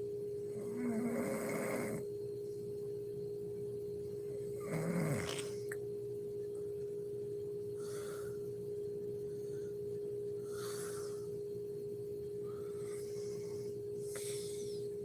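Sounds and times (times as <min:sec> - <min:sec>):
steady high-pitched hum: 0:00.0 - 0:15.0
woman breathing softly: 0:07.7 - 0:11.6, 0:12.4 - 0:15.0.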